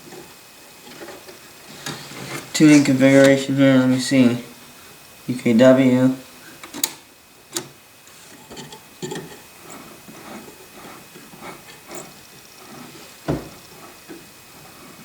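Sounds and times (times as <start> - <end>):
low hiss: 0.0 - 15.0
faint rubbing and light clicks: 0.1 - 3.4.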